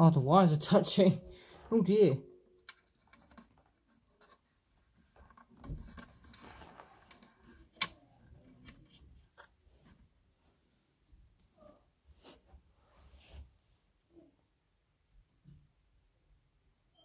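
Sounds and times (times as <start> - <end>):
hands rubbing and scraping wires: 2.7 - 10.1.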